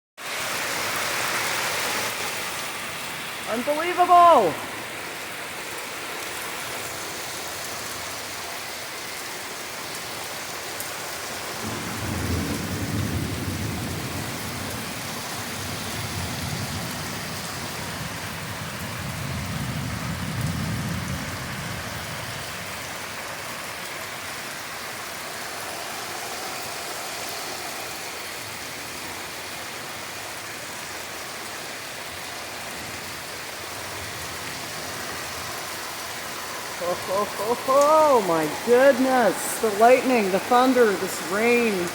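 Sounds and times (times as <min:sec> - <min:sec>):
heavy rain pouring: 0:00.2 - 0:41.9
thunder rumbling: 0:11.6 - 0:22.7.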